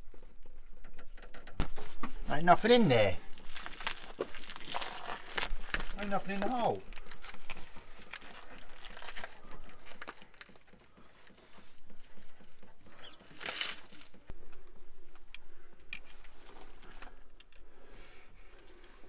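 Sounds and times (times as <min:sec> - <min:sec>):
scraping rustle: 0:00.1 - 0:14.3.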